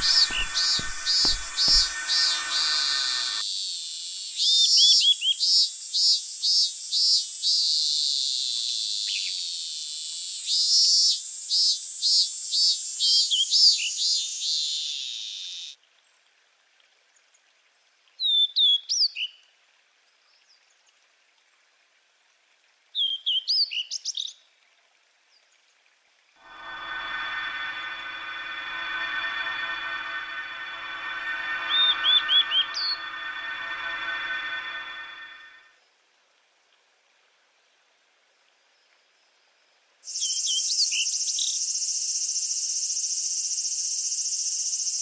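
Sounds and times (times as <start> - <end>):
high-pitched hiss: 0.0 - 11.7, 26.4 - 35.7.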